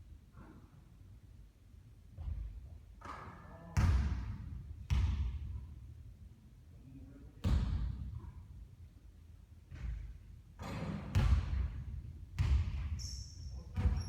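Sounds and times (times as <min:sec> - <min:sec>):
basketball bouncing on court: 0:03.8 - 0:05.6, 0:09.7 - 0:13.1, 0:13.7 - 0:14.0.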